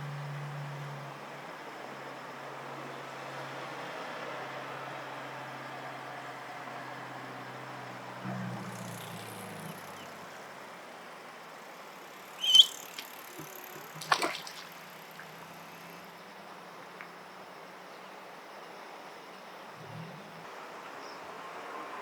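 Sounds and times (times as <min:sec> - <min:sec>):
duckling peeping: 0:12.4 - 0:14.6
wing-flapping and splashing: 0:12.4 - 0:15.7.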